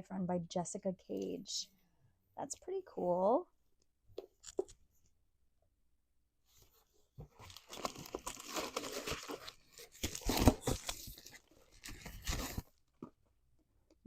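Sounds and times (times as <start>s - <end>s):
packaging tearing and crinkling: 7.5s - 12.8s.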